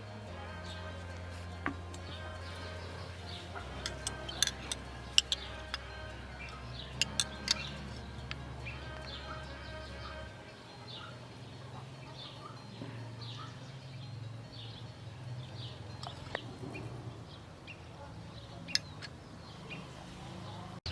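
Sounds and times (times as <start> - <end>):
low steady hum: 0.0 - 13.5
birds chirping: 0.0 - 20.9.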